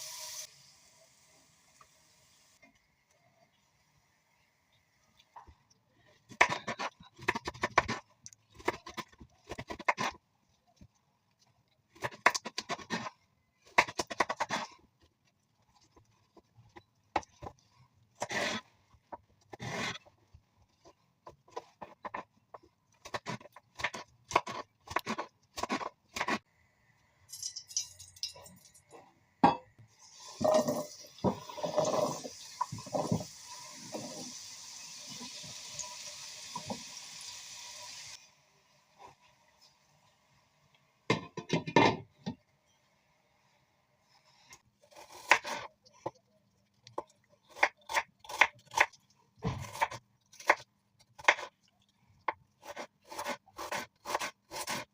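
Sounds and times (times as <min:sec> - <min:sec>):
steady hiss: 0:00.0 - 0:02.6.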